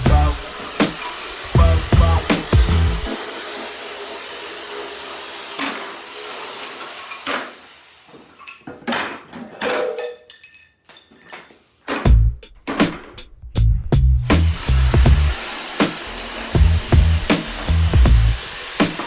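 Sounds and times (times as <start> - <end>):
jigsaw motor running: 0.0 - 8.4, 14.3 - 19.0
sharp wooden knocks and clatters: 8.5 - 13.4.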